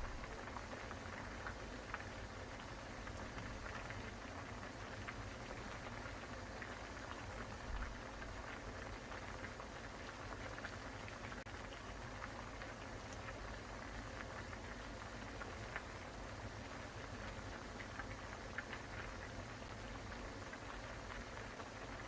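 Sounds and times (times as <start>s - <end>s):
low steady rumble: 0.0s - 0.5s
water boiling with bubbling pops: 0.0s - 22.0s.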